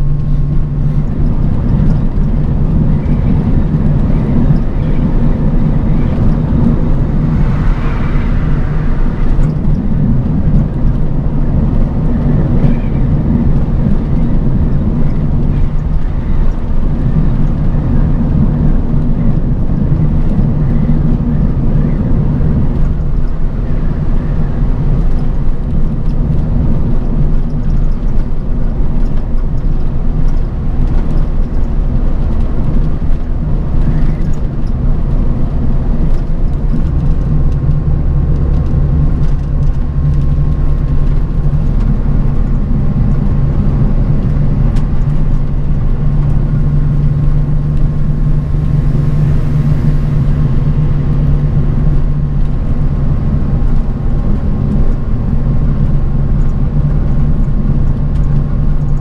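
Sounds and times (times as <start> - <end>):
bus engine drone: 0.0 - 59.0
road rumble: 0.0 - 59.0
faint steady whine: 39.0 - 57.4.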